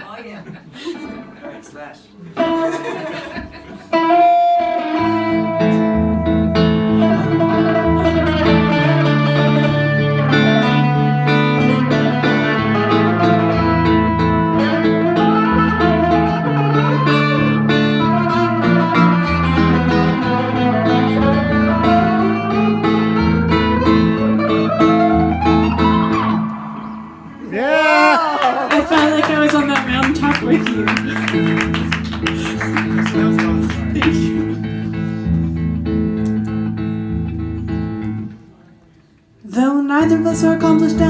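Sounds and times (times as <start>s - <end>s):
electric guitar solo: 2.4s - 2.9s, 3.9s - 38.8s.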